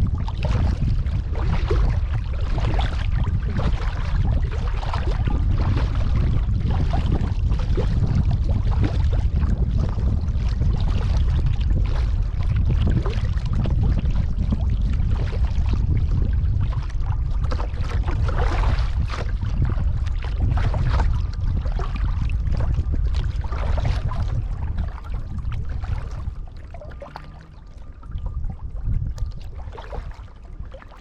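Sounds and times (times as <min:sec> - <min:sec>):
low rumble: 0:00.0 - 0:31.0
paddle splashing in water: 0:00.1 - 0:07.8, 0:08.4 - 0:31.0.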